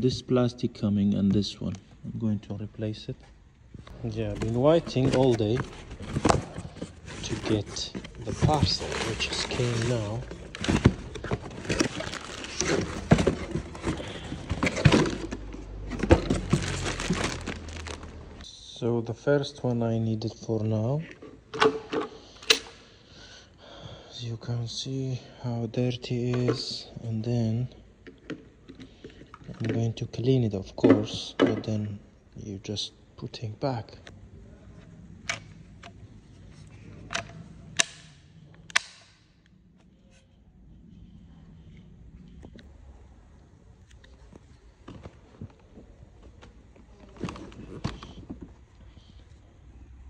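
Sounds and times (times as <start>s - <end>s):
packaging rustling: 3.9s - 18.4s.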